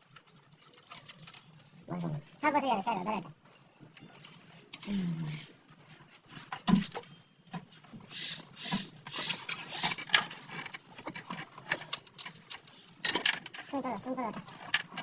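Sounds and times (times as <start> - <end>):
tools and metal parts knocking: 8.7 - 15.0.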